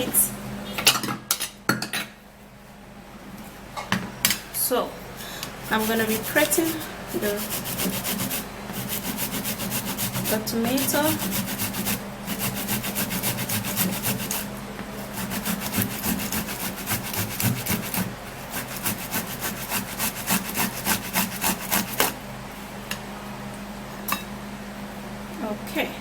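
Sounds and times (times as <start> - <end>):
tomato scraping on grater: 5.6 - 22.2.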